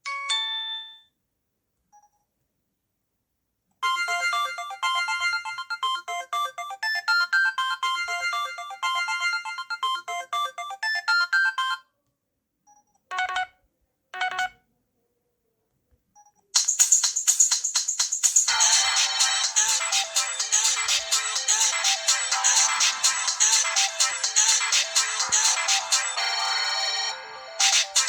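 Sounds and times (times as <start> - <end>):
polyphonic phone ringtone: 3.8 - 11.8, 13.1 - 13.5, 14.2 - 14.6, 18.5 - 28.0.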